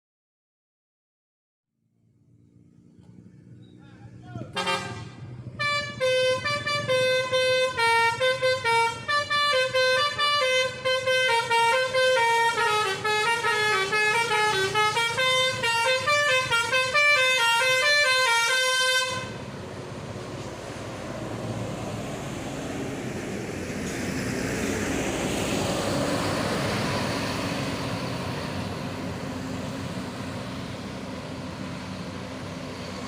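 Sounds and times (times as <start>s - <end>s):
musical air horn tune: 4.6s - 19.4s.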